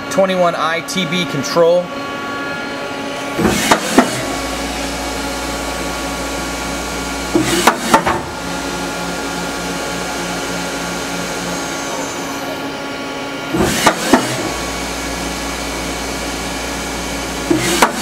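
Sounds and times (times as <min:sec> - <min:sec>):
machine hum and whine: 0:00.0 - 0:18.0
machine clunks: 0:03.4 - 0:04.4, 0:07.3 - 0:08.3, 0:13.5 - 0:14.5, 0:17.5 - 0:18.0.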